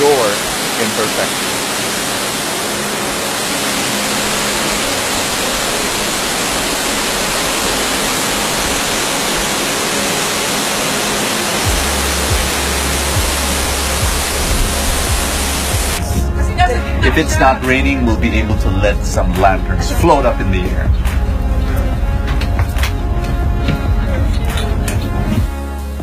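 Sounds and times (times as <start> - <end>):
waterfall rushing: 0.0 - 20.7
deep low bass: 11.7 - 26.0.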